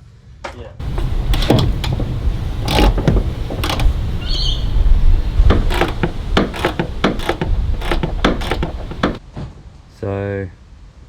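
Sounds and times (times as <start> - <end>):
plastic clunks and knocks: 0.8 - 9.2.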